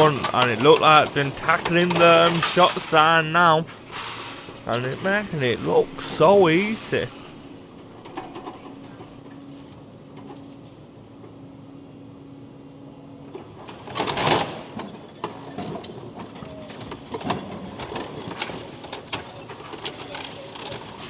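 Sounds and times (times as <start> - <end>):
knocks and clatters: 0.0 - 5.2
loud burst of demolition noise: 0.0 - 7.5
excavator mechanical hum: 0.0 - 21.0.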